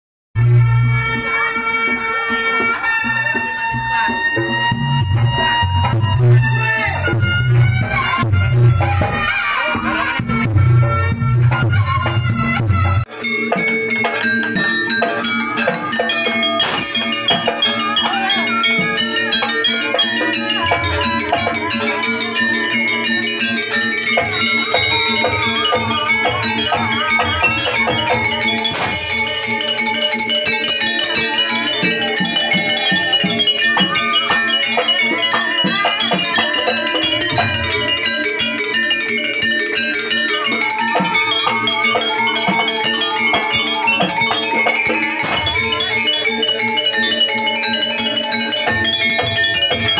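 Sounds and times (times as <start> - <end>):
struck metallic notes and percussion: 0.4 - 49.9
wavering melody line: 13.1 - 37.0, 37.6 - 49.9.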